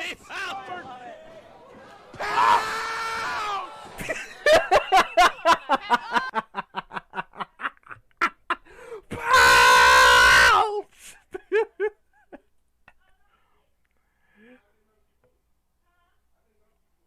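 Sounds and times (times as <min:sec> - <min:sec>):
man laughing hard: 0:04.0 - 0:09.4, 0:11.3 - 0:12.4.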